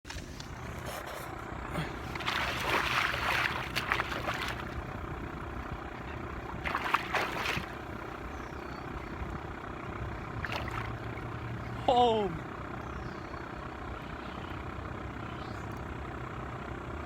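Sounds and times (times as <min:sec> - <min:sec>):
boat motor running: 0:00.1 - 0:17.0
water noise: 0:00.4 - 0:12.6.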